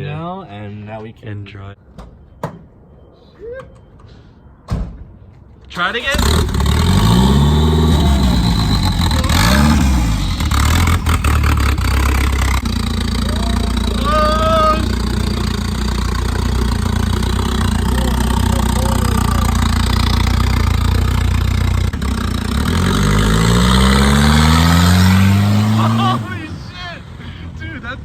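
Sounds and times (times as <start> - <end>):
car engine revving: 6.0 - 28.0.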